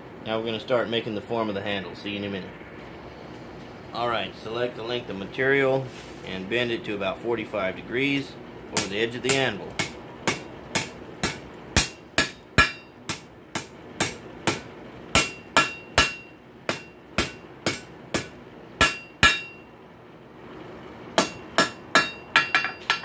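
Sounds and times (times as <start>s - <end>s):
hammer striking metal on anvil: 8.8s - 19.7s, 21.2s - 23.0s.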